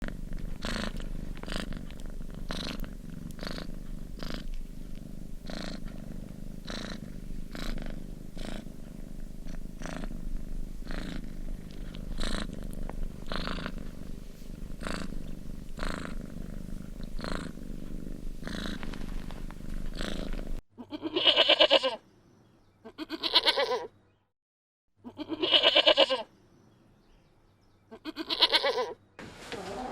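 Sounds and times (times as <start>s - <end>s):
cat purring: 0.0s - 20.6s
animal bleating: 20.8s - 22.0s, 22.8s - 23.9s, 25.0s - 26.3s, 27.9s - 29.9s.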